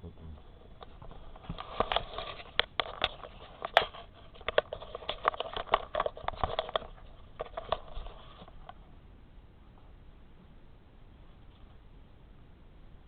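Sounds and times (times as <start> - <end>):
handling crackles and clicks: 0.8 - 8.8.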